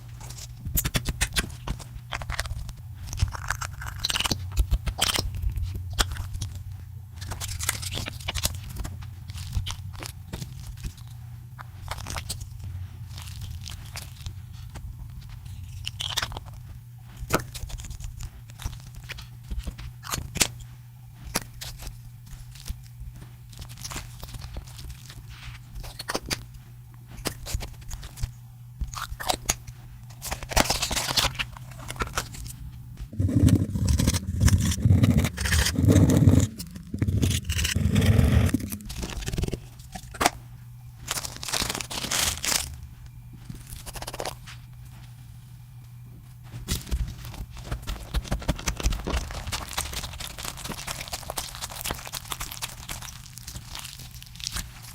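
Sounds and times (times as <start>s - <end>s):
slime squelching: 0.0s - 54.9s
slime crackling and popping: 0.2s - 11.1s, 11.7s - 20.6s, 41.0s - 42.8s, 43.4s - 44.9s, 46.4s - 54.9s.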